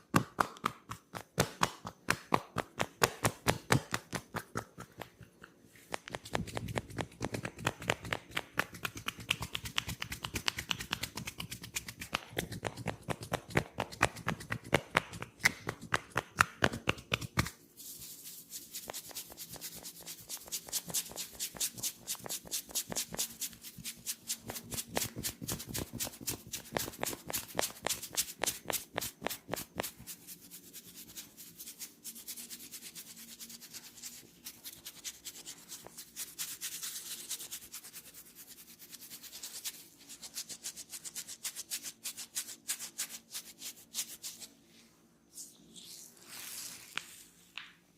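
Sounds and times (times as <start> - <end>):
hands tapping and rubbing head: 0.1 - 38.1.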